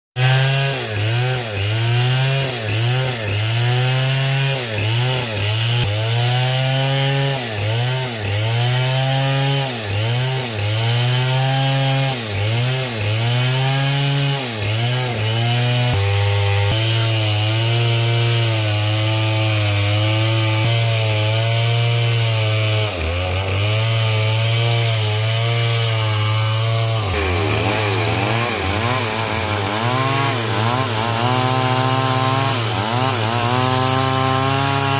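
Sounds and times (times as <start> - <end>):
chainsaw cutting wood: 0.2 - 34.9.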